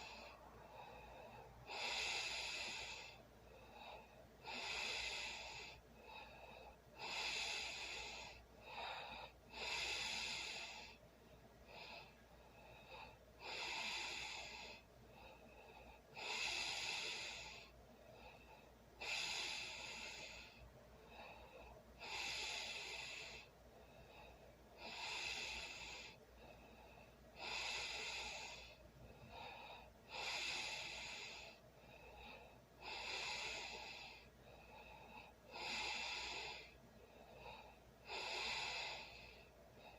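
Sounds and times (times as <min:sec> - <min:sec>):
person snoring: 0:32.9 - 0:34.2.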